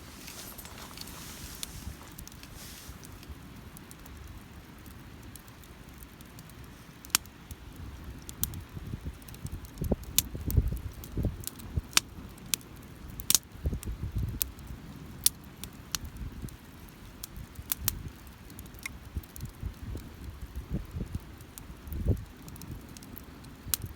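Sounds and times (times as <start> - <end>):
wood fire crackling: 0.0 - 23.9
sharp pops and snaps: 1.5 - 7.6, 17.2 - 23.9
wind rumble on microphone: 7.6 - 12.4, 13.0 - 15.2, 15.9 - 16.6, 17.2 - 18.3, 19.0 - 23.9.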